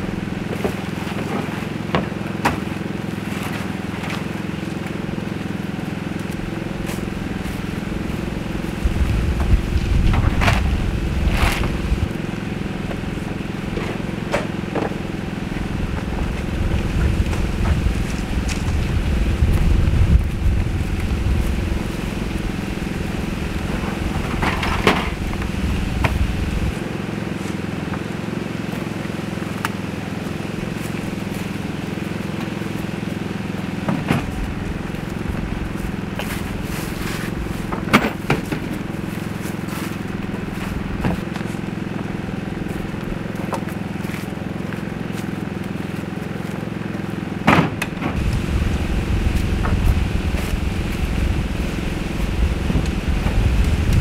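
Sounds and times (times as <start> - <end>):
steady low hum: 0.0 - 54.0
low rumble: 6.7 - 14.2, 15.4 - 26.8, 48.1 - 54.0.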